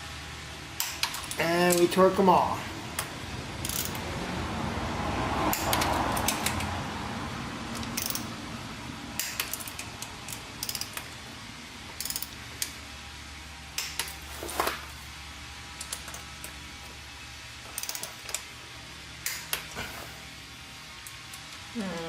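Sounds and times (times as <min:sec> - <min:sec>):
socket ratchet clicking: 0:03.0 - 0:04.0, 0:05.5 - 0:06.7, 0:07.7 - 0:08.3, 0:09.2 - 0:11.1, 0:12.0 - 0:12.8, 0:13.8 - 0:14.2, 0:17.7 - 0:18.4.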